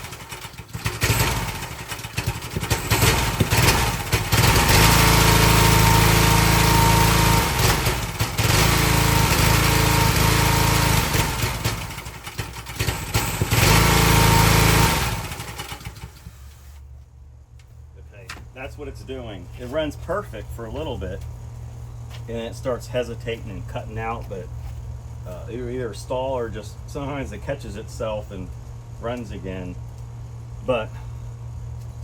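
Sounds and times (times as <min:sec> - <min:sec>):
small engine running rough: 0:00.0 - 0:16.8.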